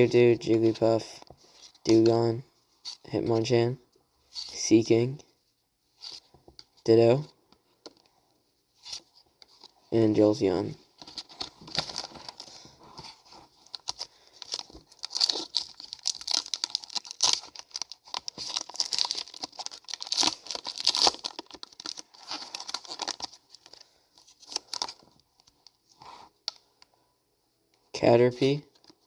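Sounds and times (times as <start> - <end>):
foil wrapper tearing and crinkling: 13.7 - 25.0.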